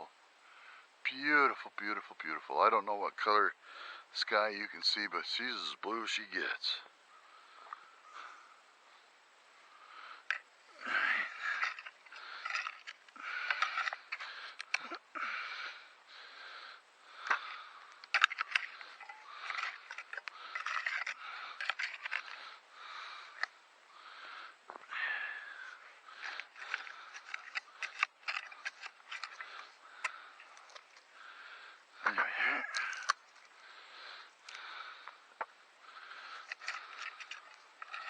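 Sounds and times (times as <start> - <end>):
heavy breathing: 7.1 - 38.0
digging tool scraping soil: 26.2 - 30.9.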